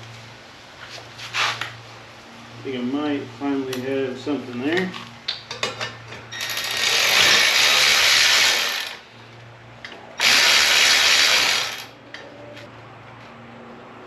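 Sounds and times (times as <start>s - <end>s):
power tool spinning a nut: 6.4s - 9.0s, 10.2s - 12.0s.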